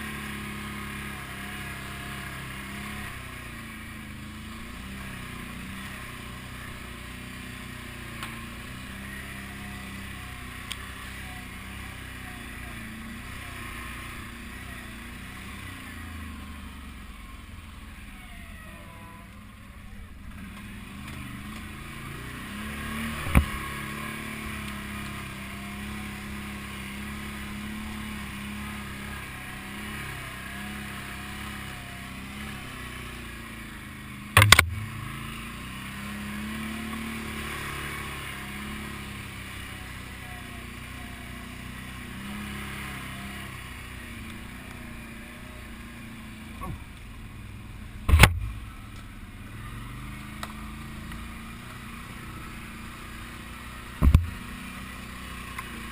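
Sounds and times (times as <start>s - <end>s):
atv engine running: 0.0s - 55.9s
sharp knocks: 48.1s - 48.5s, 54.0s - 54.4s.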